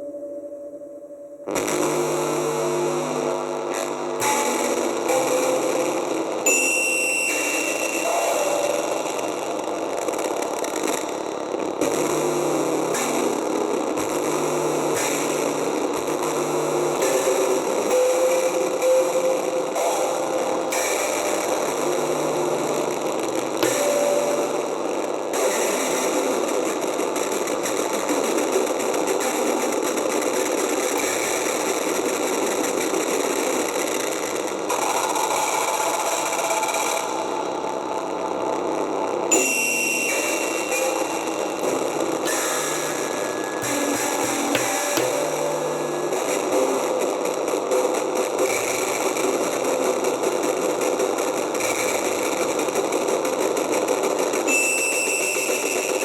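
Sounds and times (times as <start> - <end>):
distorted noise drone: 7.4 - 54.5.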